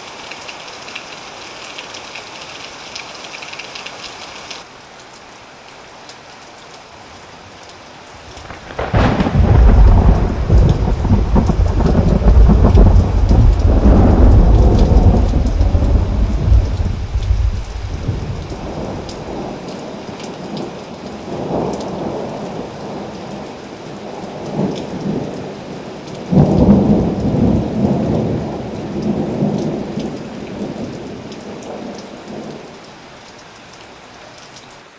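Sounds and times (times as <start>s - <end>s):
steady rain falling: 0.0s - 34.9s
thunder rumbling: 8.3s - 19.7s, 26.2s - 29.9s.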